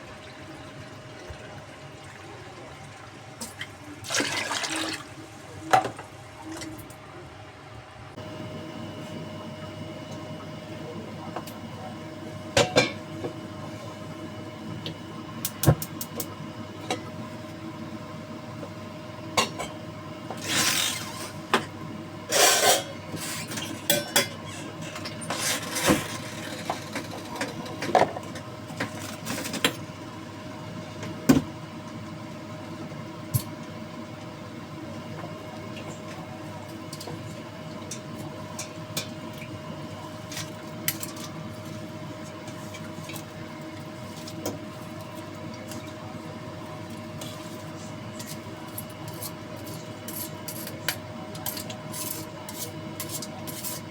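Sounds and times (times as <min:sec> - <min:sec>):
steady background hum: 0:00.0 - 0:53.9
clinks of pots and dishes: 0:12.6 - 0:13.1, 0:22.4 - 0:28.2.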